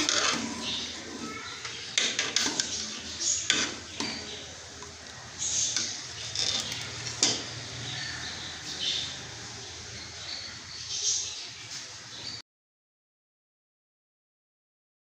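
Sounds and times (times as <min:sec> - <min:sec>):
metal spoon scraping a pot: 0:00.0 - 0:08.0.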